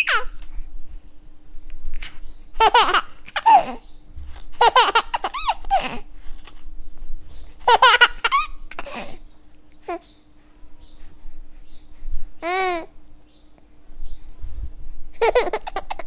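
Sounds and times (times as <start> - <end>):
baby laughing: 0.0 - 0.3, 2.6 - 3.8, 4.6 - 6.1, 7.6 - 9.2, 15.1 - 16.0.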